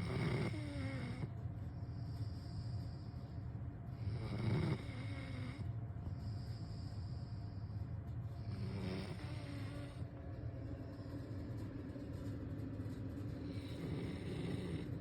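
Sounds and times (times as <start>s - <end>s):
pet snoring: 0.0s - 1.3s, 3.9s - 7.7s, 8.4s - 10.1s, 13.4s - 15.0s
steady low hum: 0.0s - 15.0s.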